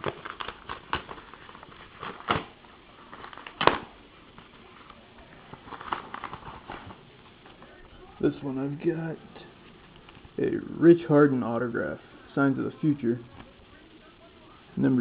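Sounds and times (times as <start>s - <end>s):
trading cards shuffling: 3.1s - 7.7s.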